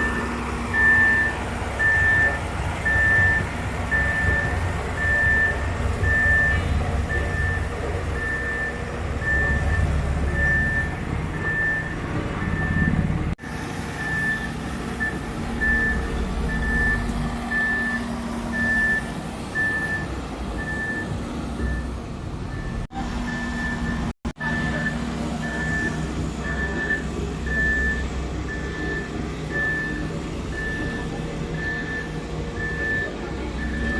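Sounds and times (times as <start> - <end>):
diesel engine rumble: 0.0 - 33.9
reversing alarm beeping: 0.0 - 33.9.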